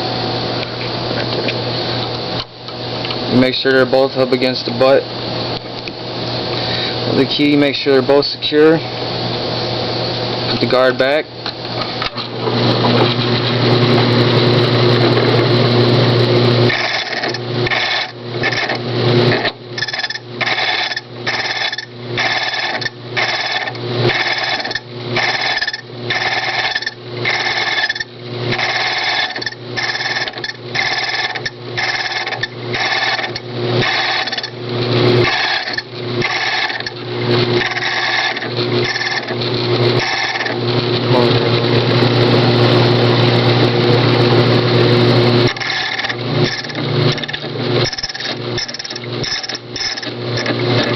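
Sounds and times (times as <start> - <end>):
key machine motor humming: 12.0 - 50.9
harsh grinding rasp of key cutting: 16.7 - 40.8, 45.4 - 50.9.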